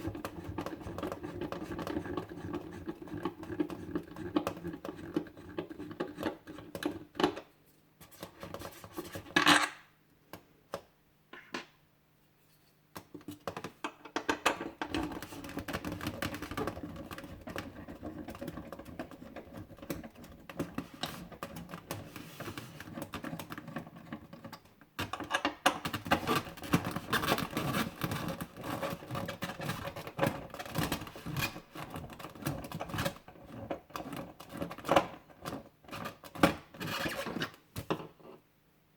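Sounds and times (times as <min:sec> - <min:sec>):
packaging rustling and scratching: 0:25.9 - 0:37.6.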